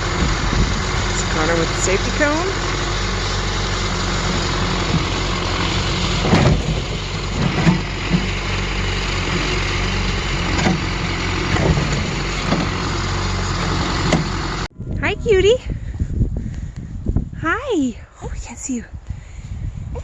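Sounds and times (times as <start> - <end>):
knocks and clanks: 0.0 - 14.7
heavy engine idling: 0.0 - 14.8.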